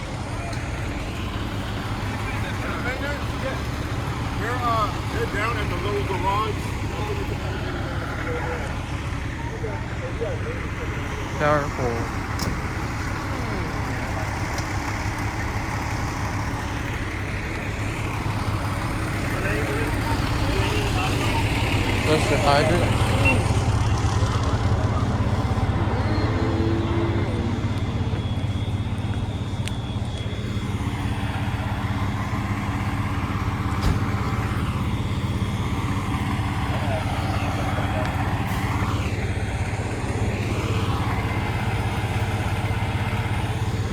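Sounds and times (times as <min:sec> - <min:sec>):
diesel engine idling: 0:00.0 - 0:43.9.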